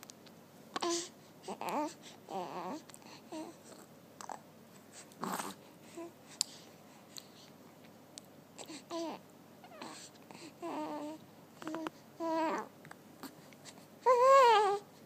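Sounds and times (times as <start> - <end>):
baby cooing: 0.8 - 4.4, 8.6 - 12.7, 14.0 - 14.8.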